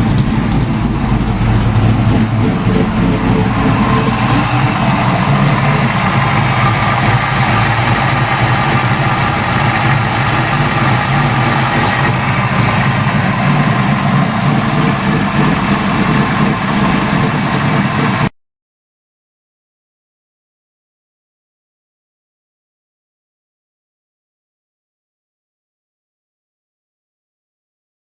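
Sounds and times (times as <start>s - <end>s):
car engine idling: 0.0s - 18.3s.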